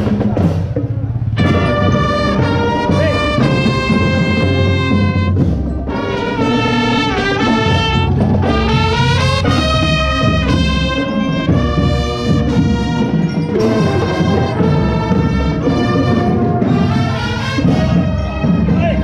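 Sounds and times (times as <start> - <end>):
low drum-like backing: 0.0 - 19.0
trumpets and trombones melody: 1.3 - 19.0.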